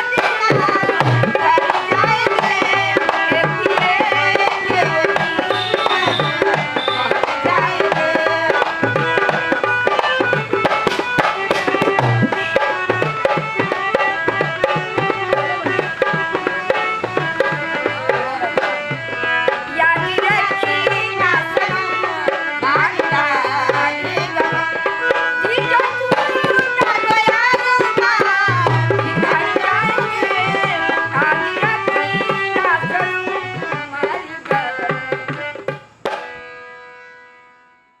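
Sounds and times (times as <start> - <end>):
tabla beat: 0.0 - 37.3
bending melodic line: 11.7 - 12.8.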